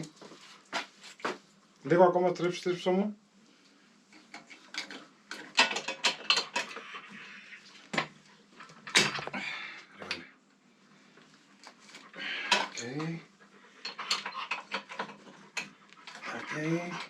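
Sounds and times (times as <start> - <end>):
metal tools clinking and knocking: 4.7 - 6.8, 13.8 - 15.7.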